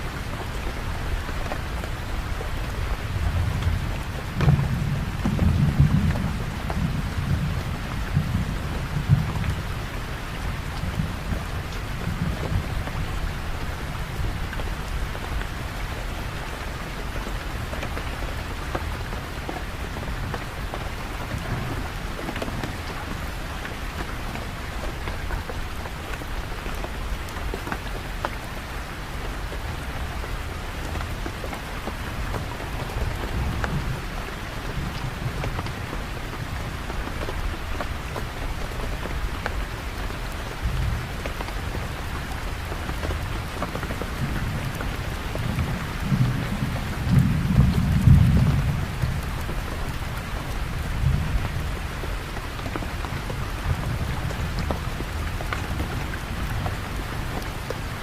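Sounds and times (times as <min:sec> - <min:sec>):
steady rain falling: 0:00.0 - 0:58.0
low rumbles of thunder: 0:02.8 - 0:15.4, 0:44.0 - 0:52.2.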